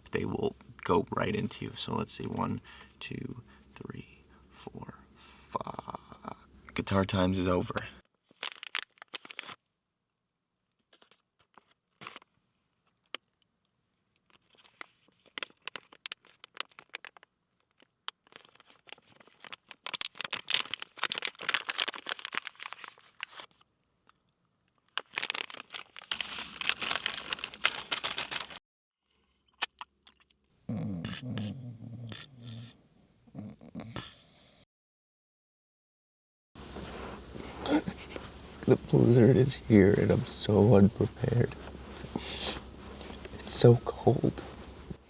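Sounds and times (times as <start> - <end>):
material crinkling and rustling: 8.1 - 9.6, 14.2 - 28.6, 36.6 - 45.0.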